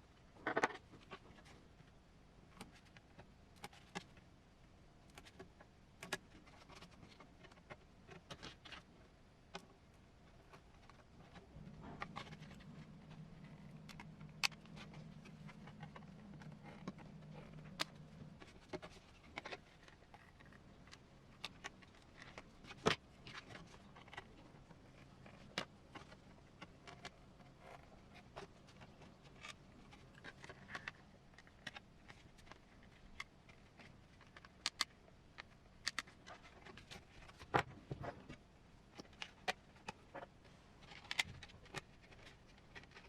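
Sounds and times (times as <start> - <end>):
low steady hum: 0.0 - 43.0.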